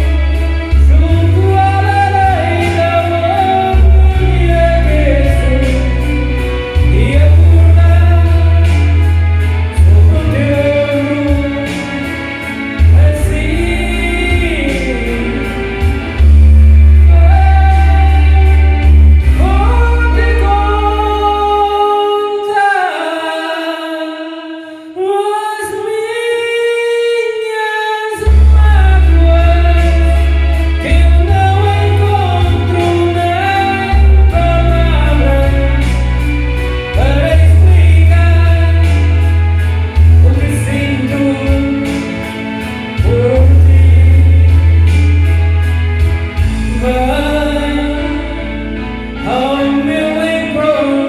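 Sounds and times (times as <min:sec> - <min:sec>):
bass: 0:00.0 - 0:23.7, 0:28.2 - 0:51.0
karaoke backing track: 0:00.0 - 0:51.0
person singing: 0:00.0 - 0:51.0.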